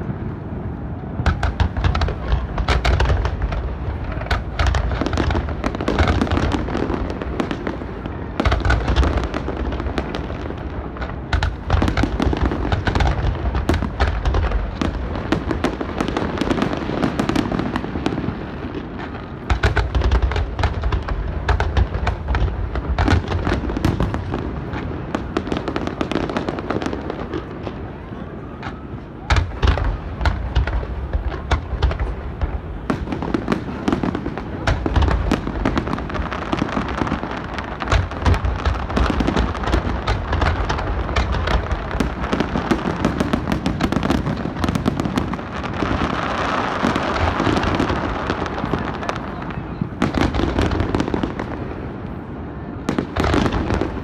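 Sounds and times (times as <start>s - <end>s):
fireworks booming: 0.0s - 54.0s
fireworks crackling: 0.0s - 54.0s.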